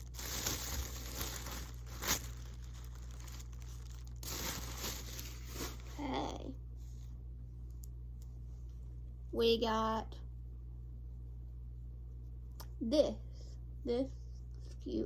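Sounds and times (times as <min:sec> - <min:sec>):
paper rustling: 0:00.0 - 0:06.0
wrapping paper ripping: 0:00.0 - 0:06.2.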